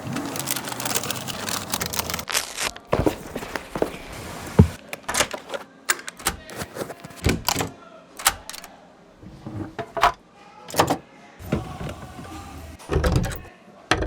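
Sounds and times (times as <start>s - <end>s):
tools clicking and knocking: 4.6s - 8.7s.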